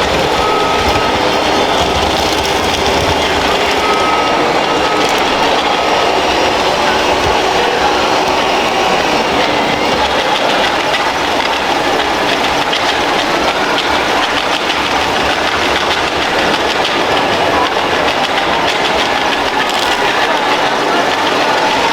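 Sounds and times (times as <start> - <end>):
small motors and gearboxes clattering: 0.0 - 5.7.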